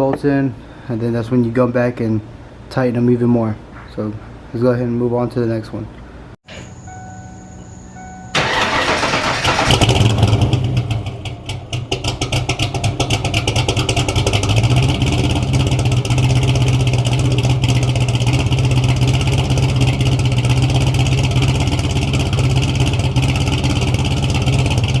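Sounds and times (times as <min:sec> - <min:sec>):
car engine starting and idling: 0:06.5 - 0:25.0.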